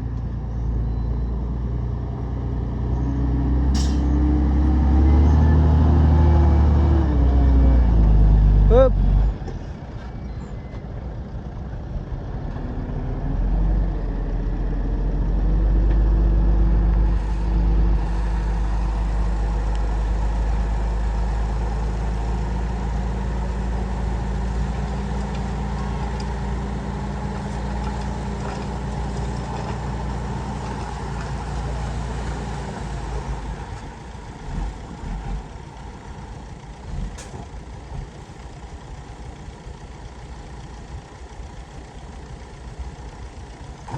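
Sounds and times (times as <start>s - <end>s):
heavy machine engine running: 13.9s - 43.9s.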